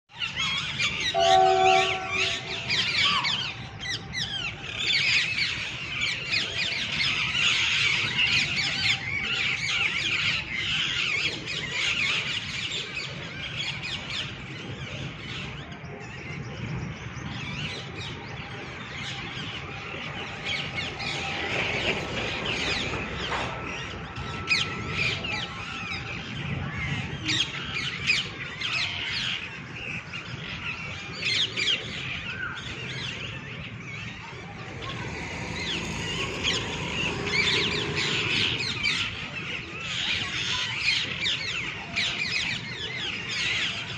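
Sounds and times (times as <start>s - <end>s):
parrots screeching and chirping: 34.7s - 39.3s.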